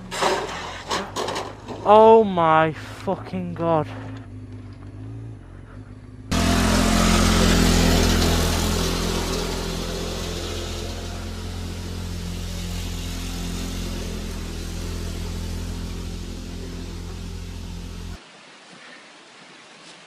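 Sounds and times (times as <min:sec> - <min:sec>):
engine humming: 0:00.0 - 0:18.2
loud rushing noise: 0:06.3 - 0:18.2.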